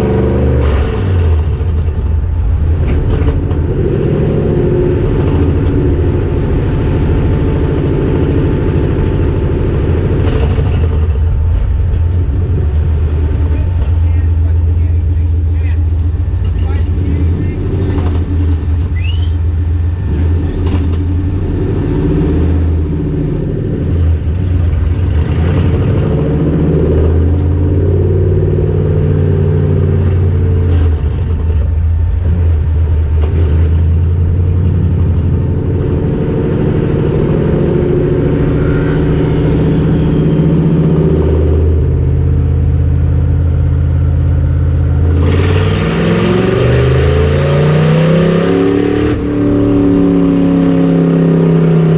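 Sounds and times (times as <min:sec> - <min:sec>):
car engine under load: 0:00.0 - 0:51.9.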